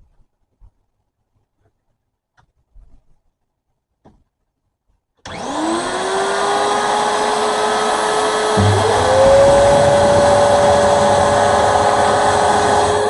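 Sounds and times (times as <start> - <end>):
low rumble: 8.6 - 13.0.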